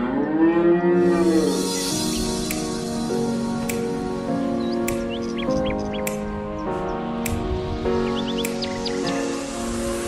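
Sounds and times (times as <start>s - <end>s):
background music of held chords: 0.0s - 10.0s
bird chirps: 4.5s - 6.2s, 8.0s - 9.4s.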